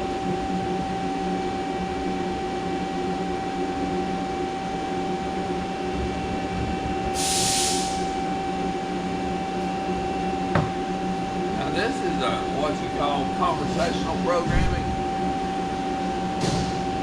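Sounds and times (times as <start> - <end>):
machine shop equipment hum: 0.0 - 17.0
burst of hiss: 7.2 - 8.1
high whine: 9.6 - 17.0.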